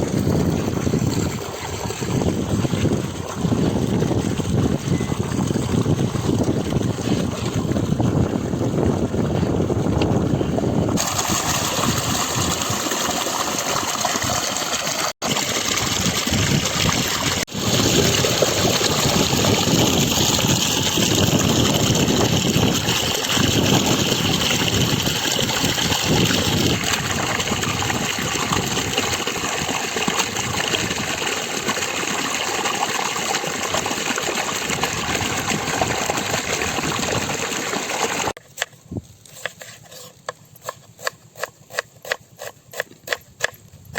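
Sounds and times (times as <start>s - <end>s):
water running and splashing: 10.9s - 38.4s.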